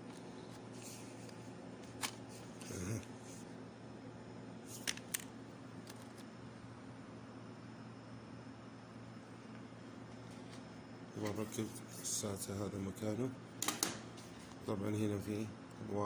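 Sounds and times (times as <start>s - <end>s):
faint steady hum: 0.0s - 16.0s
laptop parts clicking: 4.8s - 6.2s.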